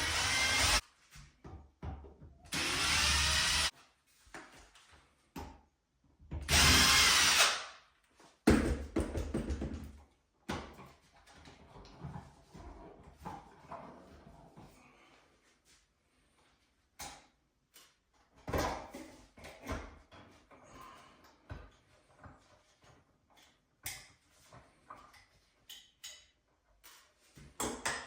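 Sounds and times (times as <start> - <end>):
clicks and taps on wall fittings: 21.2 - 28.0.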